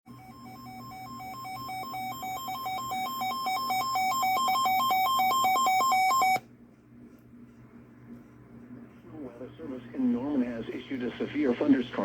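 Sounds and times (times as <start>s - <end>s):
alternating electronic alert beeps: 0.1s - 6.4s.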